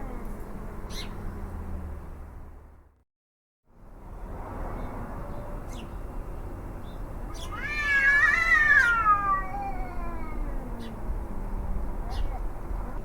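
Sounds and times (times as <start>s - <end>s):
cat yowling: 7.3s - 13.0s.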